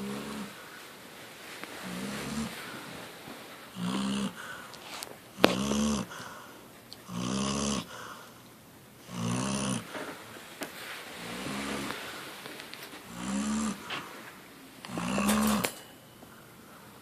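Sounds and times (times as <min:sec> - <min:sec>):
dog snoring: 0:00.0 - 0:00.6, 0:01.8 - 0:02.8, 0:03.7 - 0:06.2, 0:07.0 - 0:08.0, 0:09.0 - 0:10.0, 0:11.2 - 0:12.0, 0:13.0 - 0:14.1, 0:14.8 - 0:15.7.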